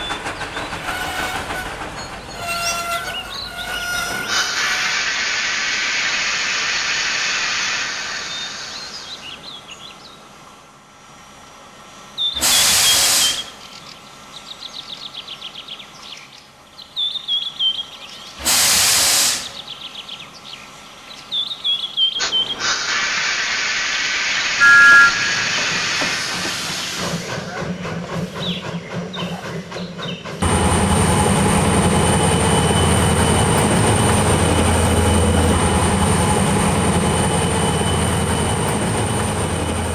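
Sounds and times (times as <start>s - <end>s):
steam hissing: 4.2s - 9.5s, 12.4s - 13.6s, 18.4s - 19.6s, 22.2s - 39.9s
loud steam blasts: 4.2s - 9.6s, 12.4s - 13.6s, 18.4s - 19.6s, 22.2s - 29.8s
brake squeals: 37.0s - 39.4s.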